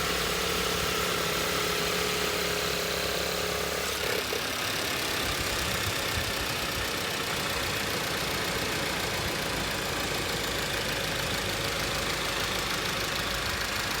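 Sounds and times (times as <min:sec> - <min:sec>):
car engine idling: 0:03.4 - 0:14.0.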